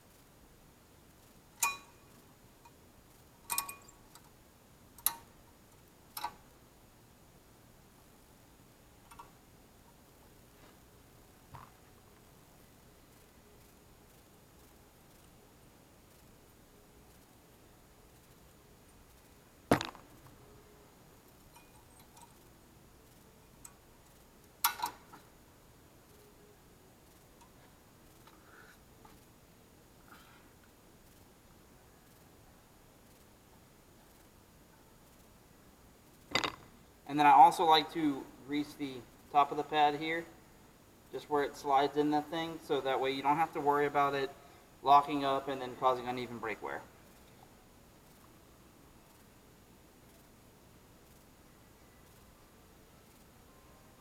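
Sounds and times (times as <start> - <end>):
sharp metallic clicks: 3.5 - 4.3, 6.1 - 6.5, 23.1 - 25.2.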